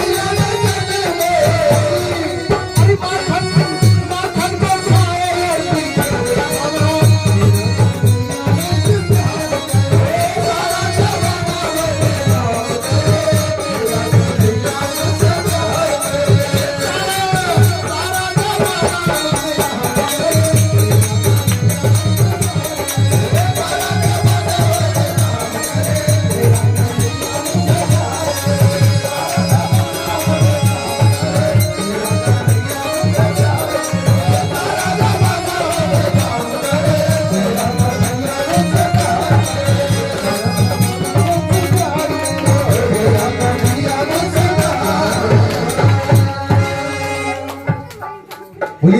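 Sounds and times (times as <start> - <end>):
devotional music: 0.0 - 48.9
hand drums: 0.0 - 48.9.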